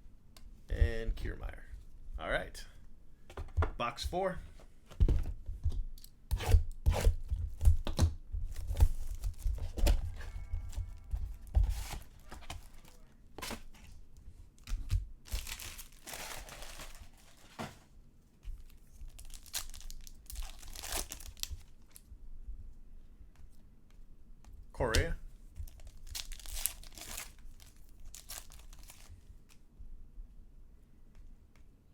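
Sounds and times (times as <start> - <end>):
plastic and foil wrapper tearing: 14.6 - 17.5, 19.1 - 22.0, 25.6 - 29.6.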